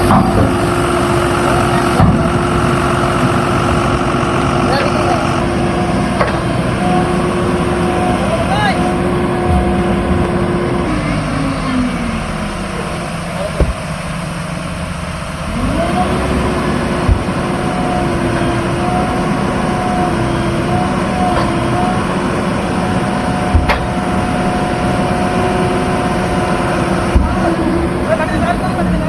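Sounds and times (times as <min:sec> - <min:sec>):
heavy diesel engine revving: 0:00.0 - 0:29.0
short knocks: 0:13.6 - 0:14.2, 0:23.5 - 0:24.1.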